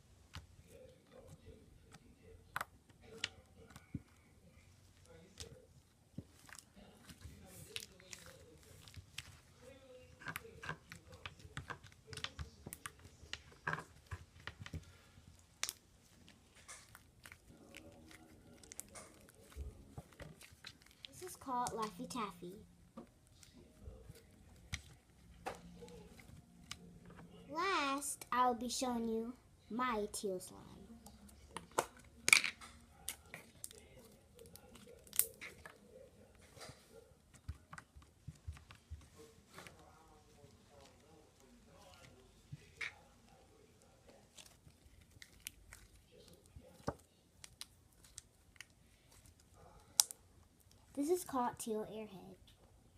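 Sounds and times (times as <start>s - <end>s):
slime with beads squished: 0.2s - 29.2s, 29.8s - 52.3s
sticky slime clicks and crackles: 10.1s - 22.3s, 31.0s - 35.8s, 44.1s - 50.9s.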